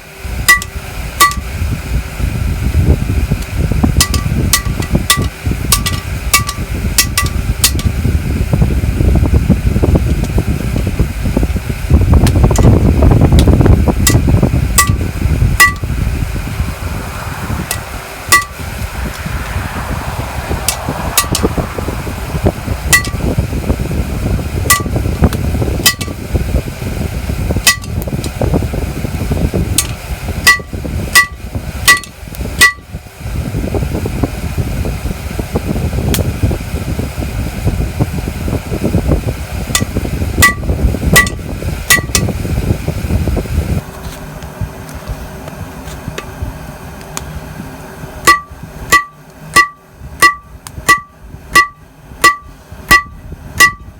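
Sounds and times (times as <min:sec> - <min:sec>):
low rumble: 0:00.0 - 0:49.0
hammer striking iron anvil: 0:00.5 - 0:01.4, 0:04.0 - 0:07.9, 0:14.8 - 0:15.0, 0:15.6 - 0:15.8, 0:17.7 - 0:18.6, 0:22.9 - 0:23.2, 0:25.9 - 0:26.2, 0:27.7 - 0:27.9, 0:29.8 - 0:32.8, 0:41.2 - 0:42.3, 0:48.2 - 0:53.9.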